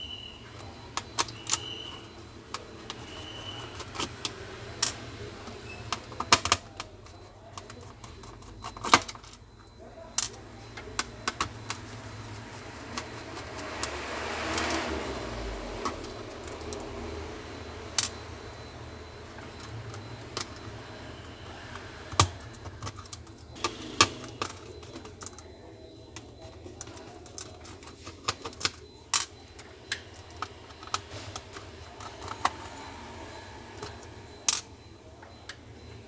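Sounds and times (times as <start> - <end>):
clicks and knocks of tools: 26.2 - 32.8.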